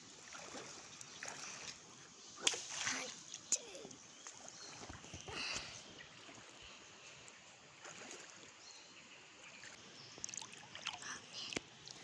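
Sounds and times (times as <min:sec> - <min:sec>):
small splash: 0:00.2 - 0:01.8, 0:02.4 - 0:03.6, 0:07.8 - 0:08.6.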